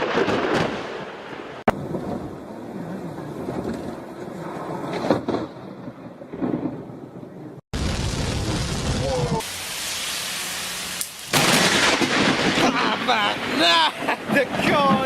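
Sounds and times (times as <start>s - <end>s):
thunder rumbling: 0.0s - 9.7s, 11.2s - 15.0s
rain falling: 7.8s - 15.0s.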